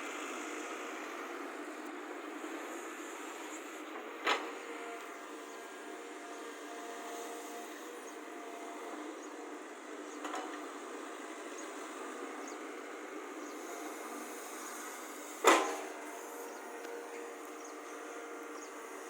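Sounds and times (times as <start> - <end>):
excavator running: 0.1 - 19.0
faint whining tones: 0.2 - 19.0.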